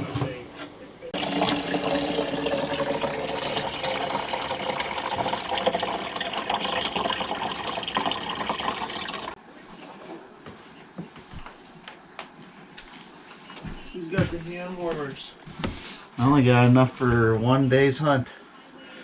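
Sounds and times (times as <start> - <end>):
tap water running: 1.2 - 9.4.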